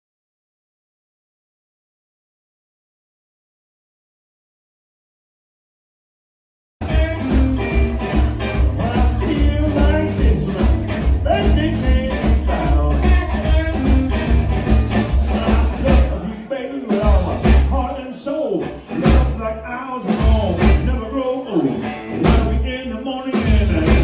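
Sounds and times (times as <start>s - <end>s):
heavy bass line: 6.8s - 16.3s, 17.0s - 17.8s, 20.2s - 21.0s, 23.4s - 24.0s
steady drum beat: 6.8s - 16.3s, 16.9s - 18.0s, 20.1s - 21.0s, 22.3s - 24.0s
live blues band playing: 6.8s - 18.0s, 18.6s - 24.0s.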